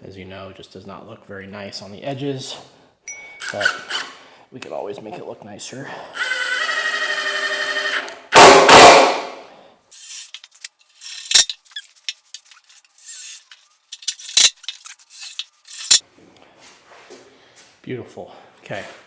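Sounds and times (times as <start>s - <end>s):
wood scraping and rubbing: 10.0s - 16.0s.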